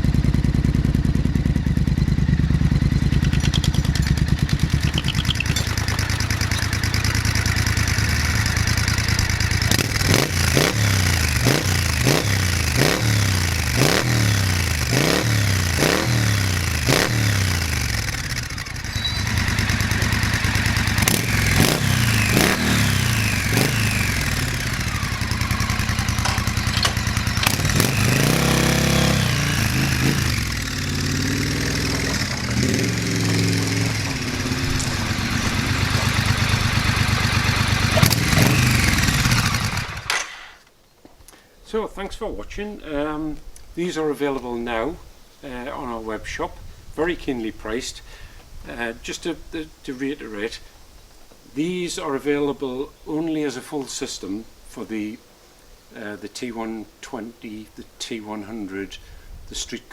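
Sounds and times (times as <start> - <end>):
motorcycle engine idling and revving: 0.0 - 40.6.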